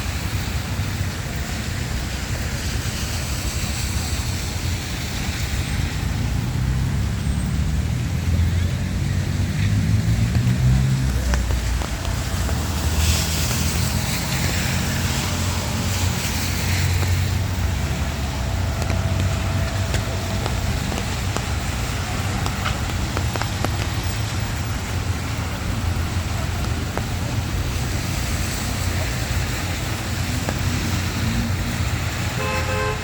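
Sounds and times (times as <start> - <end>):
low traffic rumble: 0.0 - 33.0
tyre hiss on wet pavement: 0.0 - 33.0.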